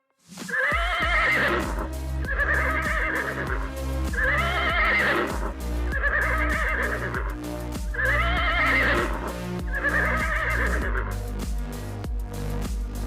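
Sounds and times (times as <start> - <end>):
background music with steady beat: 0.0 - 13.0
horse whinnying: 0.5 - 11.2.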